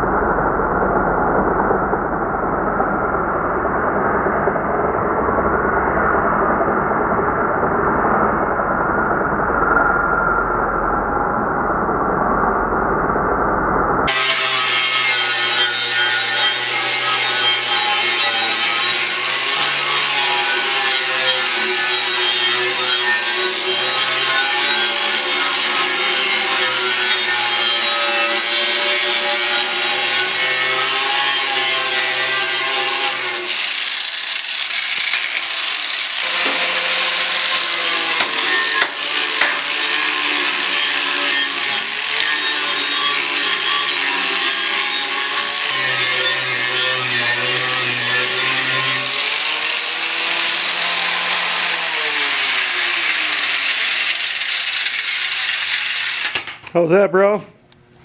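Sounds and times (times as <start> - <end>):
power grinder grinding steel: 14.1 - 56.6.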